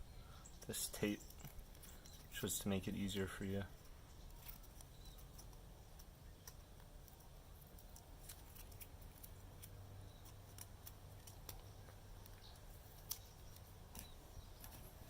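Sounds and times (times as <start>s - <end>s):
tape peeling clicks: 4.3s - 15.0s.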